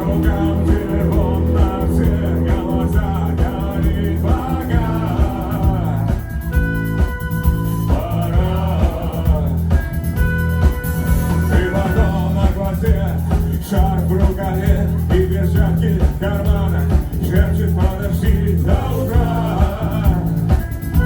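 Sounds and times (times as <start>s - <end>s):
rock song with singer: 0.0s - 21.0s.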